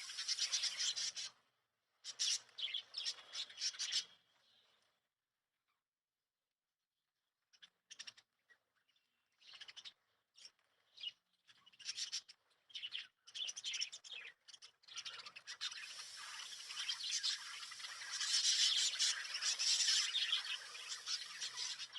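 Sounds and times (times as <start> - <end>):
small parrots chirping: 15.0 - 21.9.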